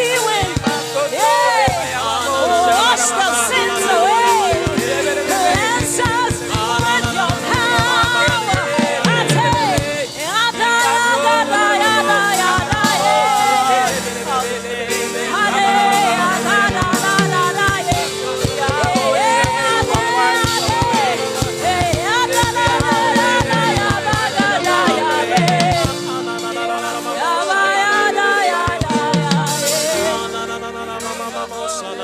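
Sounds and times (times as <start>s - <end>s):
drum kit beat: 0.0s - 31.9s
keyboard and bass notes: 0.0s - 32.0s
voices singing: 0.0s - 32.0s.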